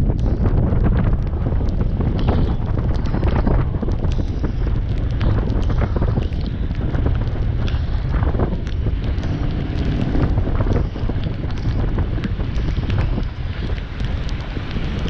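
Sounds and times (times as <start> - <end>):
heavy low rumble: 0.0 - 15.0
wind buffeting microphone: 0.0 - 15.0.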